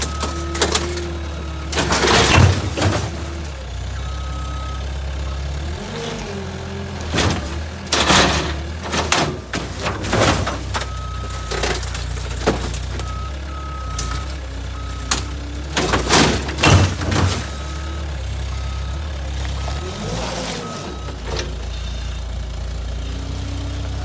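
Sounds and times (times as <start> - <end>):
metal crunching and banging: 0.0 - 21.9
diesel engine under load: 0.0 - 24.0
backup alarm beeping: 9.8 - 19.8.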